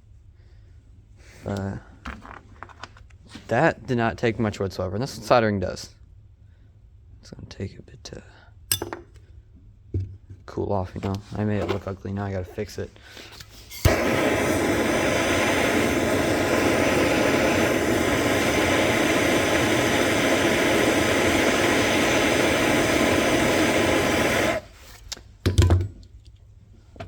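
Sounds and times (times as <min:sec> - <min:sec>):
blowtorch flame roaring: 0:13.7 - 0:24.8.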